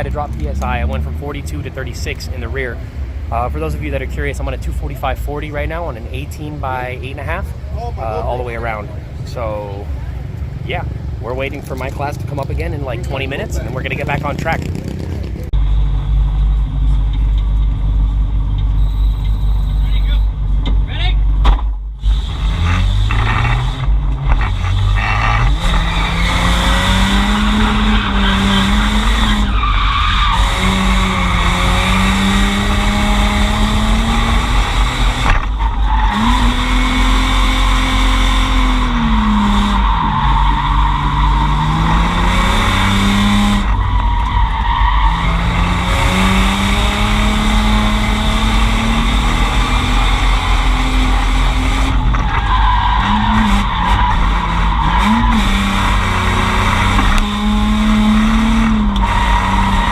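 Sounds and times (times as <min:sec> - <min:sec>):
car engine at high revs: 0:11.4 - 0:18.9, 0:22.0 - 0:59.9
tire squeal: 0:22.0 - 0:59.9.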